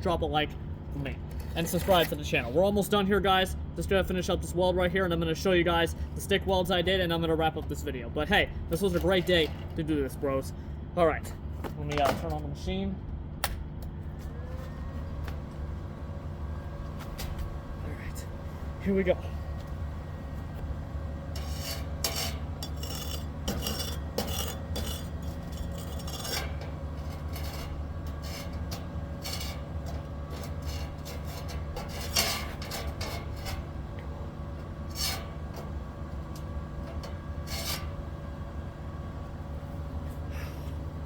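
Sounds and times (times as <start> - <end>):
arc welder humming: 13.9 - 41.0.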